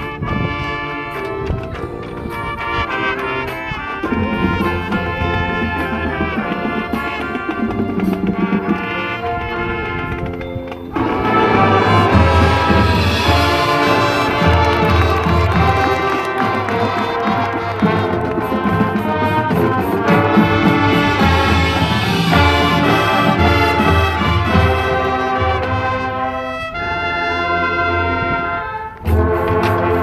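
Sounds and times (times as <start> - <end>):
marching band brass chords: 0.0 - 30.0.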